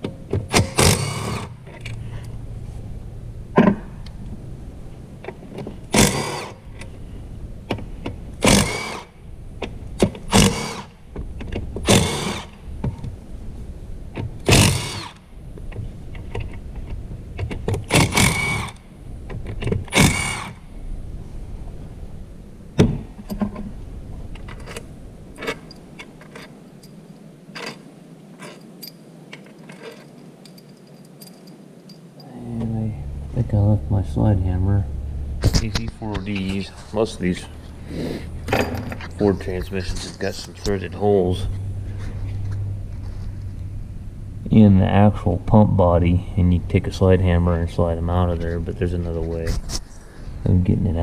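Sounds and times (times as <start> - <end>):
power wrench spinning: 0.5 - 2.0, 5.9 - 6.6, 8.4 - 9.1, 10.3 - 10.9, 11.8 - 12.6, 14.5 - 15.2, 17.9 - 18.8, 19.9 - 20.6
metallic clack: 38.4 - 40.8.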